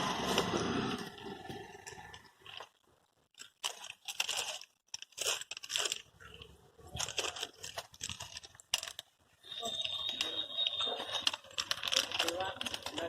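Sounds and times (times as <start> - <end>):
biscuits crunching: 1.1 - 13.0
wrapper crinkling: 1.6 - 13.0.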